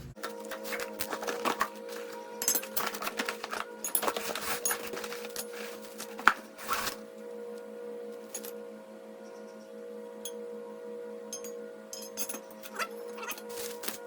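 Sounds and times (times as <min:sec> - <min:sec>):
steady drone: 0:00.0 - 0:14.0
metal parts clinking and rattling: 0:00.2 - 0:06.9, 0:11.4 - 0:14.0.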